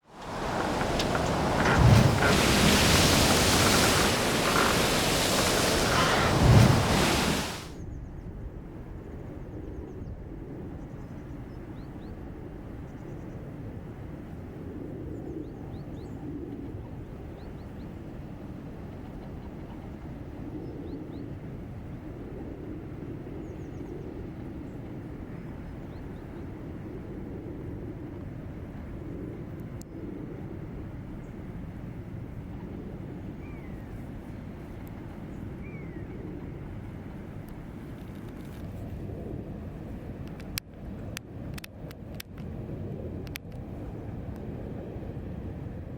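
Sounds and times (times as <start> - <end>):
low boat engine drone: 0.0 - 7.7
wind buffeting microphone: 0.0 - 7.8.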